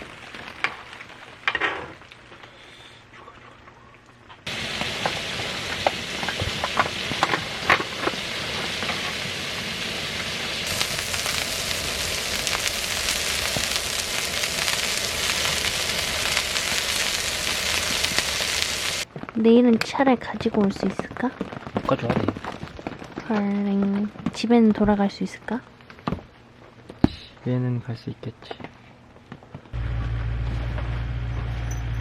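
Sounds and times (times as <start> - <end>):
spattering pops: 4.4 - 25.1
food sizzling in a hot pan: 4.5 - 19.1.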